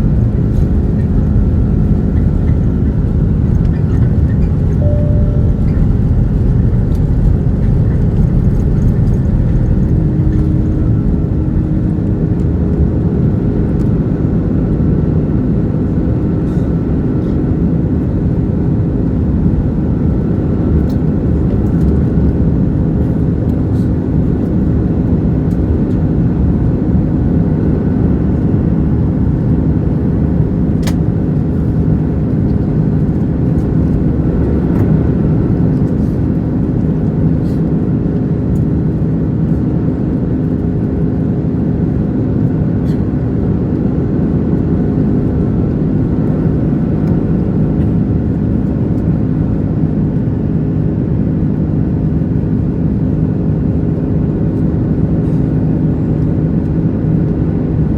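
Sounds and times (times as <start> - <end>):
faint steady whine: 0.0 - 12.5
airplane cabin engine hum: 0.0 - 57.9.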